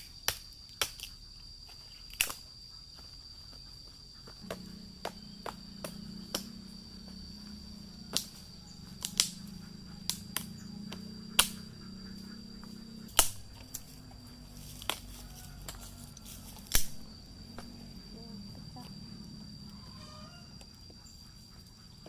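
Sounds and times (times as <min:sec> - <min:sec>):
steady high whine: 0:04.2 - 0:21.7
low hum: 0:04.2 - 0:21.8.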